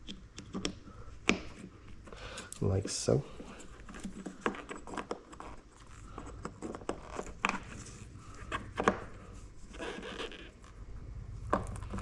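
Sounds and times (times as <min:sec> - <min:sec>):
rubbing: 0:03.3 - 0:10.8.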